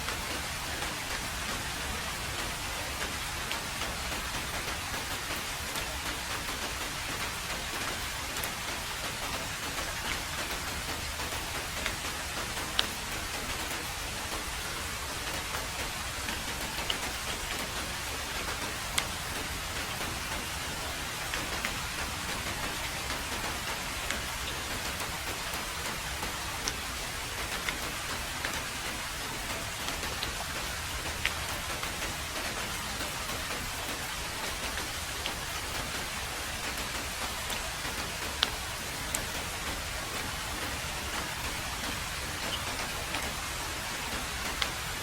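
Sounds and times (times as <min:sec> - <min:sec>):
heavy rain on a road: 0:00.0 - 0:45.0.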